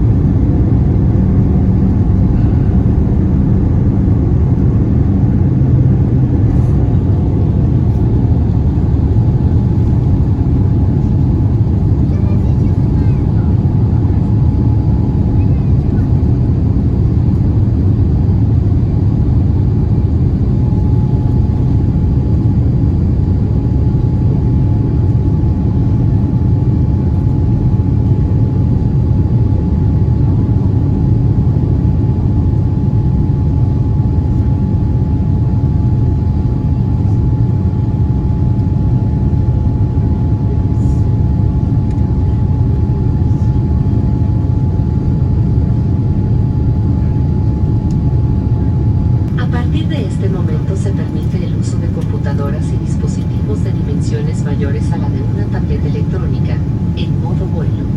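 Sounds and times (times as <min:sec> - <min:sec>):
airplane cabin engine rumble: 0:00.0 - 0:57.9
faint steady whine: 0:44.4 - 0:57.9.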